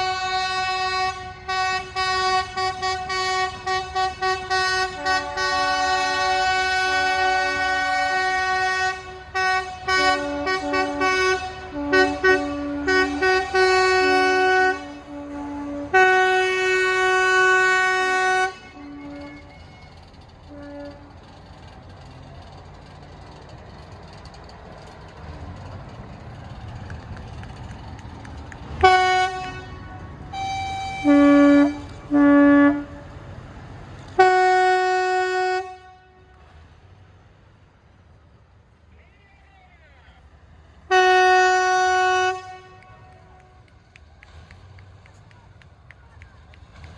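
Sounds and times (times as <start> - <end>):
locomotive two-tone horn blasts: 0.0 - 21.8, 28.7 - 33.4, 34.0 - 36.8, 40.8 - 43.7.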